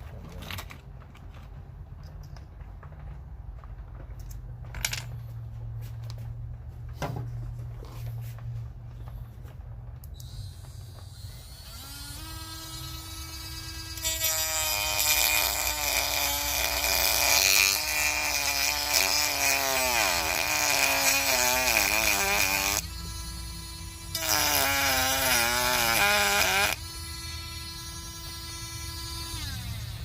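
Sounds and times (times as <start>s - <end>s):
rotary tool whining: 10.1s - 30.0s
rotary tool grinding: 10.2s - 30.0s.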